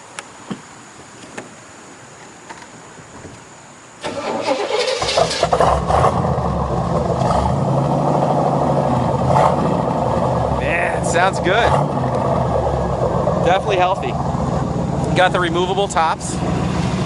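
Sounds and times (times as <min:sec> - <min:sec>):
car engine running: 0:05.1 - 0:17.0.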